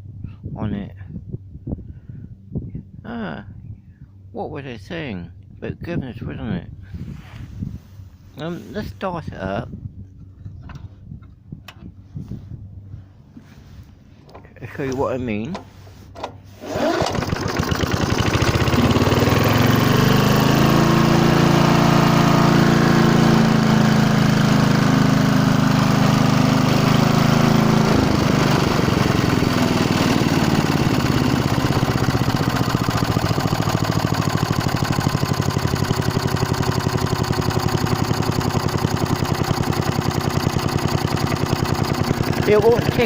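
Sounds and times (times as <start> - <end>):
lawn mower engine revving: 16.4 - 43.0.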